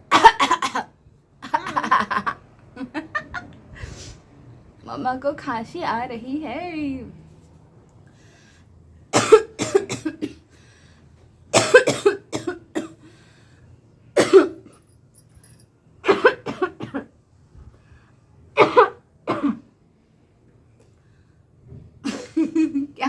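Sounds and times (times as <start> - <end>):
woman coughing: 0.1 - 0.9, 9.1 - 10.4, 11.6 - 13.0, 14.2 - 14.7, 16.0 - 17.1, 18.6 - 19.7.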